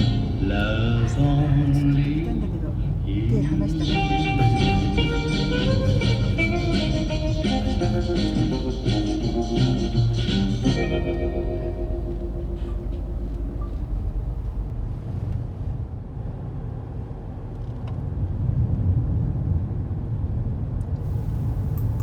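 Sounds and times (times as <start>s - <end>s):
car road and engine rumble: 0.0s - 14.8s, 21.0s - 22.0s.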